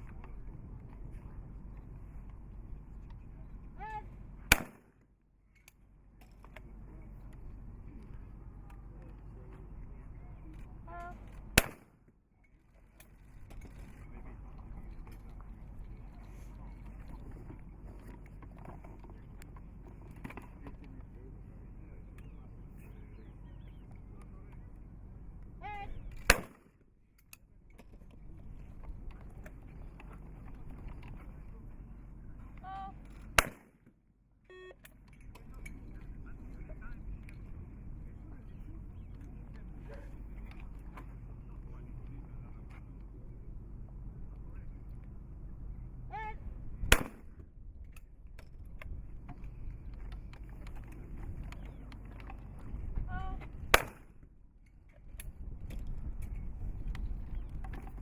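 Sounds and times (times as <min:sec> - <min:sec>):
person calling for target: 0:03.8 - 0:04.2, 0:25.6 - 0:26.0, 0:32.6 - 0:33.0, 0:46.1 - 0:46.5, 0:53.1 - 0:53.5
shotgun shot: 0:04.5 - 0:04.9, 0:11.6 - 0:11.9, 0:26.2 - 0:26.6, 0:33.4 - 0:33.7, 0:46.9 - 0:47.3, 0:53.7 - 0:54.1.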